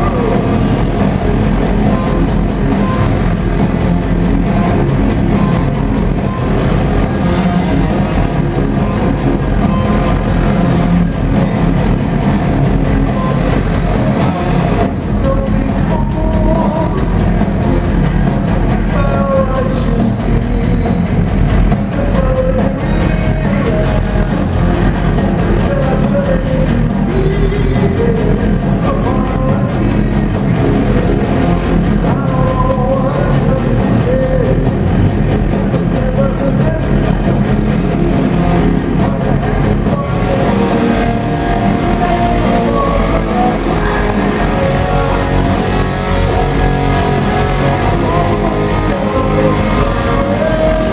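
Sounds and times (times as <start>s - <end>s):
man singing lead vocal: 0.0s - 1.1s, 14.3s - 17.4s, 18.8s - 34.9s, 35.5s - 50.9s
live rock band: 0.0s - 50.9s.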